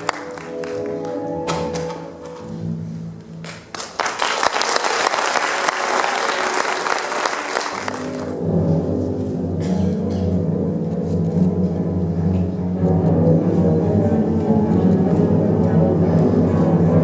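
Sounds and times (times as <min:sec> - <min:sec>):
audience applauding: 0:00.0 - 0:01.2, 0:03.4 - 0:08.4
ballet music: 0:00.0 - 0:17.0.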